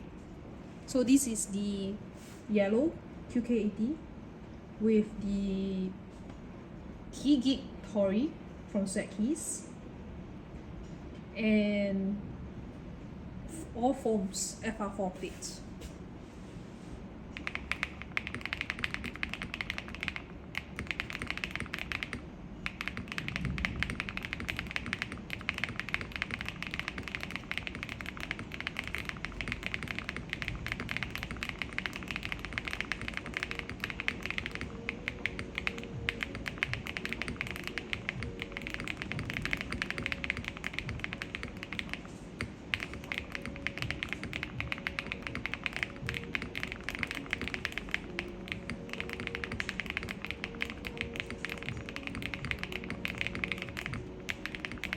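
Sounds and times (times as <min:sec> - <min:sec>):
quiet music: 0:00.0 - 0:54.9
fast typing on mechanical keyboard: 0:17.4 - 0:54.9.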